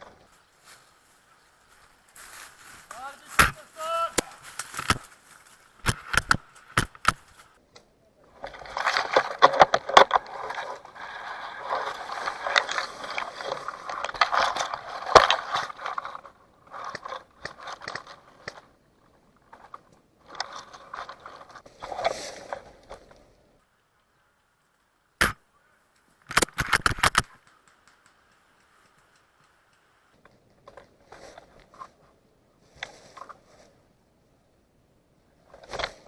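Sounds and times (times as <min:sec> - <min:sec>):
rustling through vegetation: 0:00.0 - 0:34.2
twigs snapping: 0:02.1 - 0:18.7.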